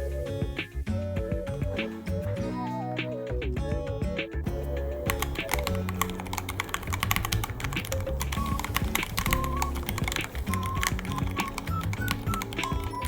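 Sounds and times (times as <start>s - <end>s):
background music: 0.0s - 13.0s
mechanical keyboard typing: 5.0s - 13.0s.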